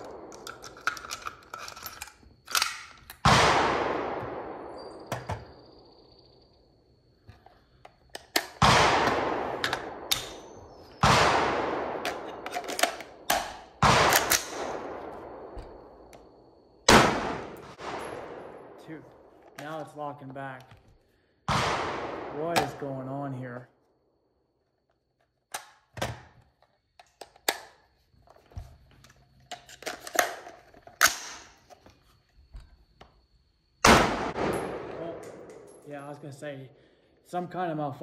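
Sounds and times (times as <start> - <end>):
rifle shots echoing: 0.0 - 0.7, 3.2 - 5.8, 8.5 - 16.1, 16.8 - 19.8, 21.5 - 23.5, 33.8 - 35.9.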